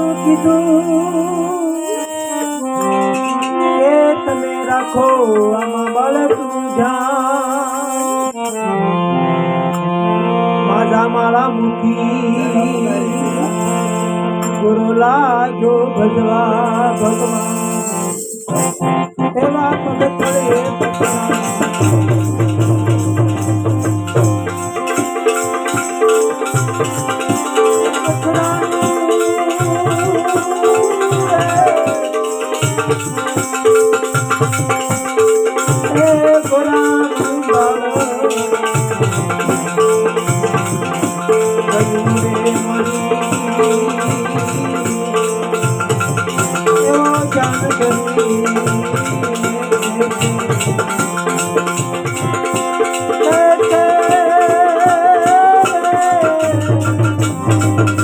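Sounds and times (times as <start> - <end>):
wavering melody: 0.0 - 7.4, 20.2 - 58.0
hand percussion: 0.0 - 8.8, 12.4 - 15.0, 16.3 - 58.0.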